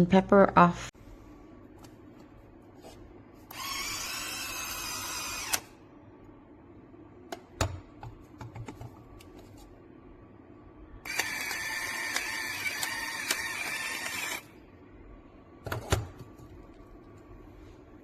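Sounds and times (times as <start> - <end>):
electric grinder motor running: 3.6 - 5.6.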